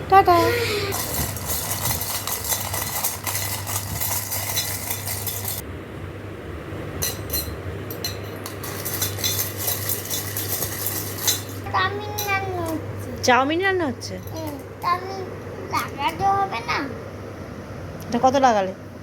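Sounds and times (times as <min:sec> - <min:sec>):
steady low hum: 0:00.0 - 0:19.0
metal utensil scraping a pan: 0:08.4 - 0:11.7.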